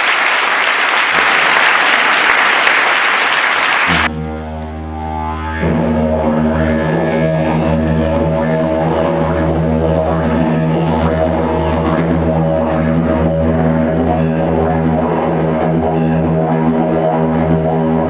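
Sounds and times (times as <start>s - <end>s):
applause: 0.0s - 4.1s
didgeridoo drone: 3.8s - 18.0s.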